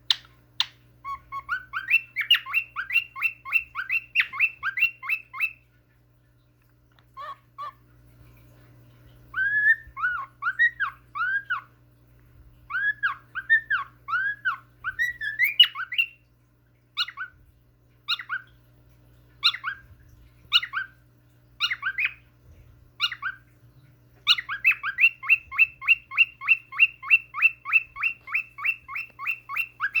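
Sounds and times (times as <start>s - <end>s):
cockatiel chirping: 0.1s - 5.6s, 9.3s - 11.6s, 12.7s - 16.2s, 17.0s - 17.3s, 18.1s - 18.5s, 19.4s - 19.8s, 20.5s - 20.9s, 21.6s - 22.2s, 23.0s - 23.4s, 24.2s - 30.0s.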